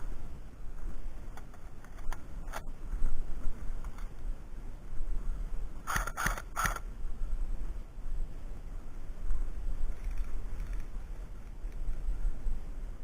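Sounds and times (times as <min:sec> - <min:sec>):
wind rumble on microphone: 0:00.0 - 0:13.0
faint clicks: 0:09.2 - 0:12.1.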